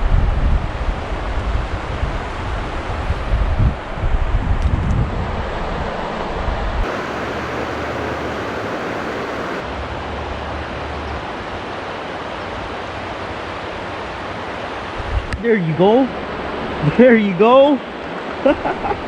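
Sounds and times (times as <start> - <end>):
wind rumble on microphone: 0.0 - 9.6, 15.0 - 15.4
flowing river water: 6.8 - 9.6, 17.8 - 18.4.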